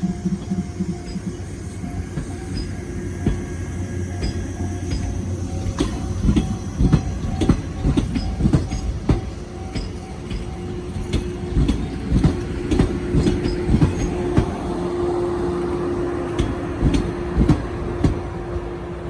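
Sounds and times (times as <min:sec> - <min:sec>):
level crossing warning bell: 0:00.0 - 0:12.6
train wheels clacking over rail joints: 0:00.0 - 0:14.8, 0:16.2 - 0:18.4
electric train passing: 0:00.0 - 0:19.0.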